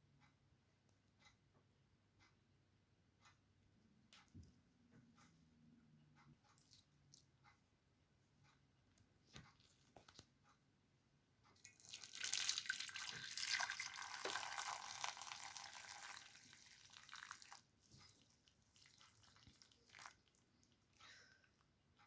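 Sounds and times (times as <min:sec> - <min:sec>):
water pouring: 0:11.6 - 0:20.8.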